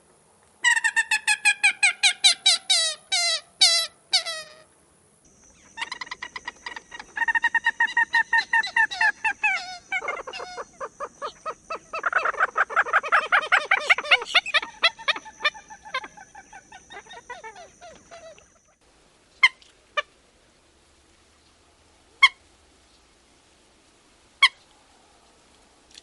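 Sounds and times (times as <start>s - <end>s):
bird cackling call: 0.6s - 4.7s, 5.6s - 18.8s.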